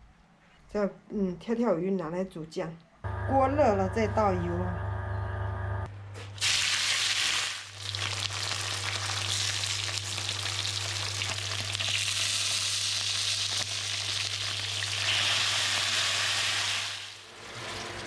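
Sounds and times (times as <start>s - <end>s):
low hum: 3.0s - 6.2s
fish sizzling in hot oil: 6.4s - 18.0s.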